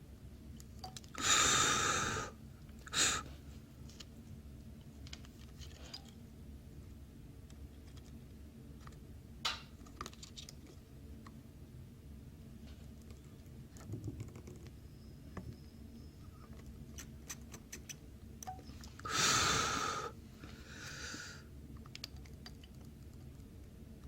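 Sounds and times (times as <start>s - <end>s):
hissing rush of air: 1.2s - 3.3s, 19.1s - 20.2s.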